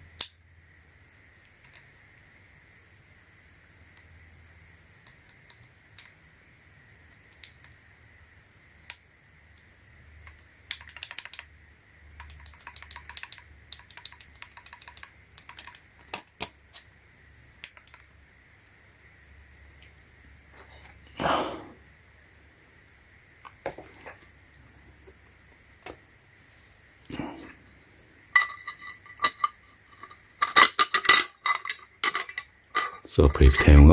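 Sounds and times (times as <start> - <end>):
keyboard typing: 12.2 - 15.8.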